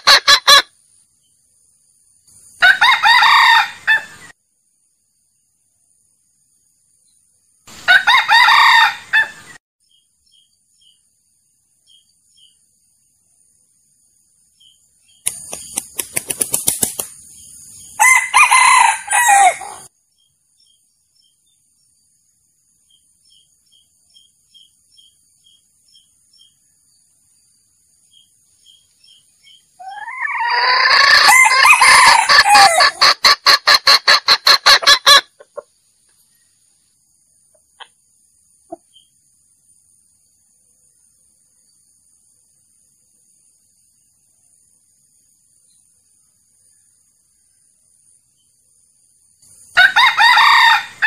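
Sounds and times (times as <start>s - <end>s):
junglefowl crowing and clucking: 0.0s - 0.8s, 2.4s - 4.4s, 7.7s - 9.6s, 15.3s - 19.9s, 29.5s - 35.8s, 49.6s - 51.0s.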